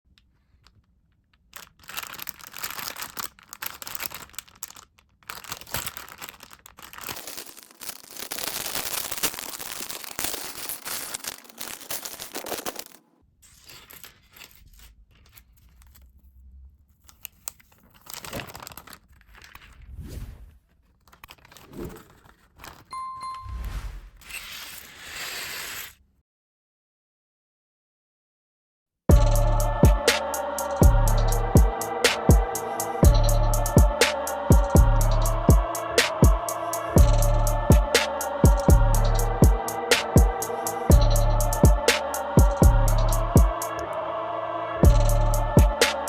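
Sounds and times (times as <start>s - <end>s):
plastic bag tearing and crinkling: 1.5s - 14.8s, 17.7s - 20.0s.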